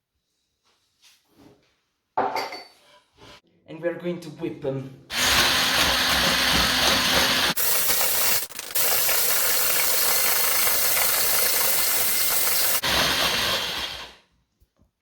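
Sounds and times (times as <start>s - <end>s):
electric mixer whirring: 5.1s - 14.2s.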